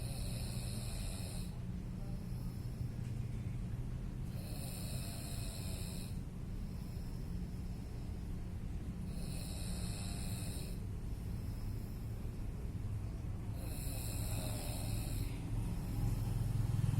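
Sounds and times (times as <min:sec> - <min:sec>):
person snoring: 0:00.0 - 0:01.6, 0:04.3 - 0:06.2, 0:09.1 - 0:10.8, 0:13.5 - 0:16.4
steady low rumble: 0:01.2 - 0:16.9.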